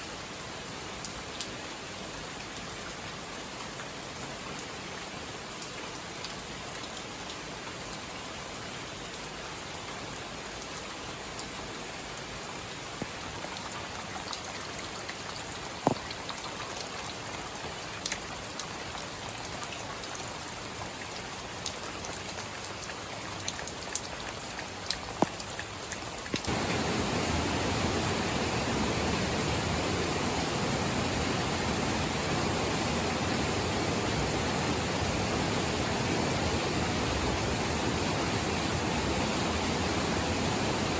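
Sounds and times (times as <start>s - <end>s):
rush of water: 0.0s - 40.9s
steady rain: 0.0s - 40.9s
sharp drips: 13.1s - 27.9s.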